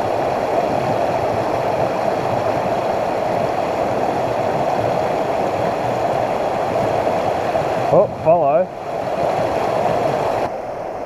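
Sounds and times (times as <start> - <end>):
water rushing over rocks: 0.0 - 11.0.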